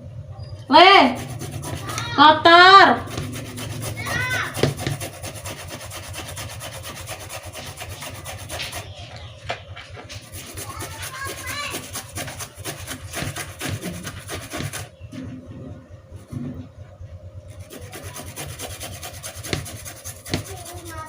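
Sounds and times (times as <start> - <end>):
root scraping on a grater: 1.0 - 9.0, 10.1 - 14.9, 17.5 - 21.0.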